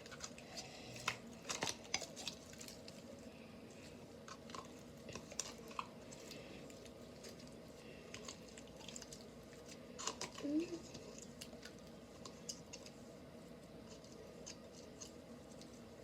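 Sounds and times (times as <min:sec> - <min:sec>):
slime squishing and crackling: 0:00.0 - 0:13.1.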